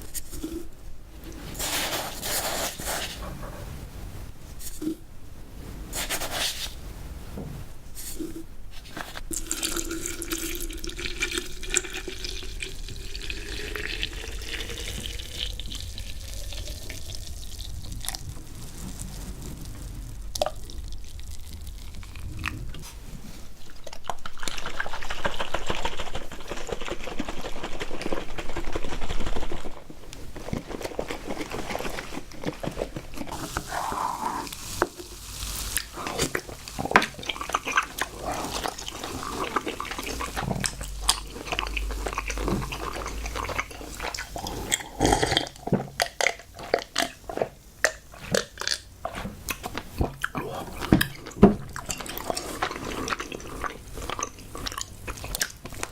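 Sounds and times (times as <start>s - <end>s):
quick scraping and rustling: 1.3s - 3.9s, 5.8s - 6.8s
liquid pouring into a glass: 9.3s - 17.8s.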